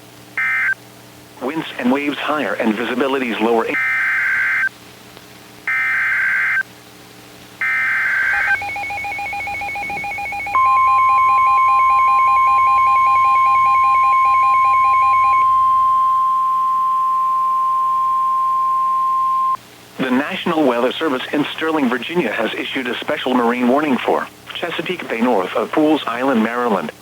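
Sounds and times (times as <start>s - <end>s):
steady alarm tone: 5.7s - 6.6s, 7.6s - 19.6s
warbling data tones: 7.6s - 17.2s.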